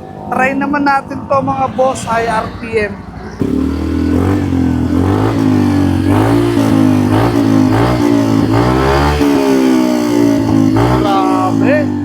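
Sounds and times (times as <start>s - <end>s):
scooter engine revving: 0.0s - 12.0s.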